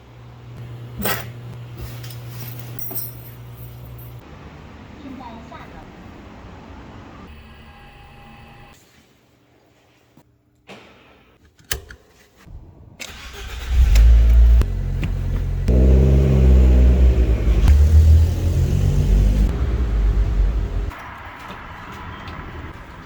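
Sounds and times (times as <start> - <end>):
vehicle engine starting and revving: 13.1 - 21.0.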